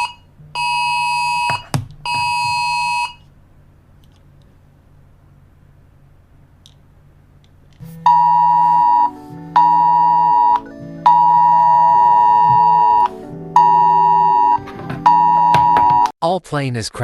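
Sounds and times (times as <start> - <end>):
faint low hum: 0.0 - 15.5
electronic alert tone blasts: 8.0 - 16.1.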